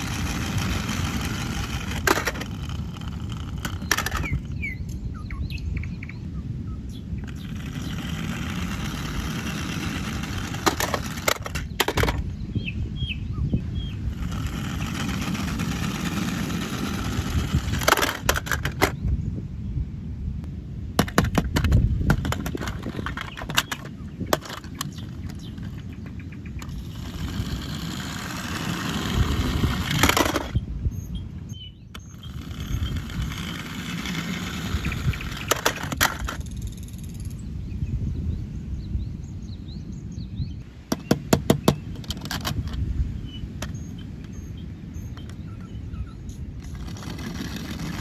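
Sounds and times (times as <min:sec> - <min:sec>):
sharp clicks and cracks: 0:00.0 - 0:04.5, 0:07.2 - 0:12.2, 0:14.0 - 0:19.0, 0:21.0 - 0:30.6, 0:32.0 - 0:37.0
handling rumbling and scraping: 0:00.0 - 0:04.8, 0:07.1 - 0:12.6, 0:13.6 - 0:19.3, 0:20.8 - 0:37.2, 0:40.8 - 0:48.0.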